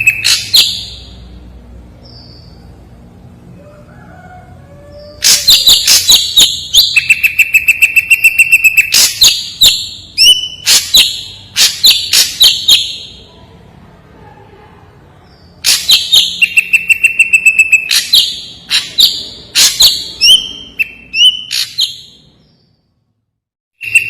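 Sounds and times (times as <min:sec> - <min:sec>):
bird singing harsh notes: 0:00.0 - 0:01.4, 0:05.0 - 0:13.3, 0:15.3 - 0:22.9, 0:23.8 - 0:24.0.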